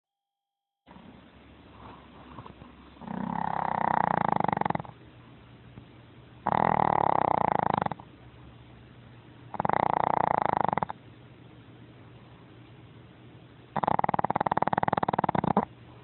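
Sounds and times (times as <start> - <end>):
dog snoring loudly: 1.8 - 5.0, 6.4 - 8.1, 9.5 - 11.0, 13.7 - 15.7
dog breathing: 13.8 - 15.7.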